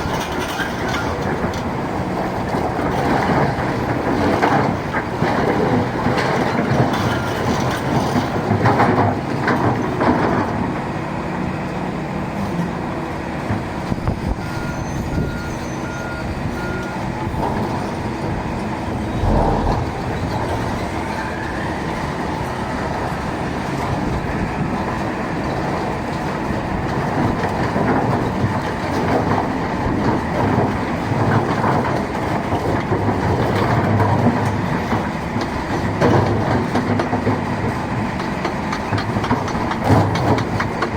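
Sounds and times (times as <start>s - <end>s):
excavator diesel engine: 0.0s - 40.9s
stone crusher rumbling: 18.9s - 21.2s.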